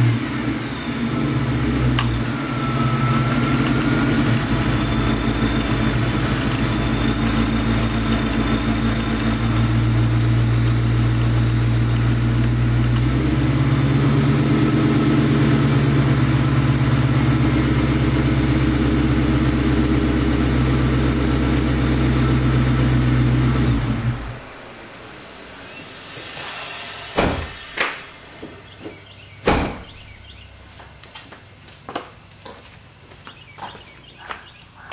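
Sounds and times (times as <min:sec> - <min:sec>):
car engine idling: 0:00.0 - 0:31.7
engine shutting off: 0:00.0 - 0:31.8
high-pitched chirping tick: 0:00.1 - 0:23.7.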